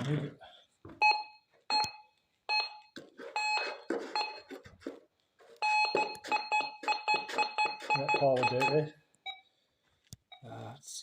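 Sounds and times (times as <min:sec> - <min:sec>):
metal detector beeping: 0:05.6 - 0:09.4.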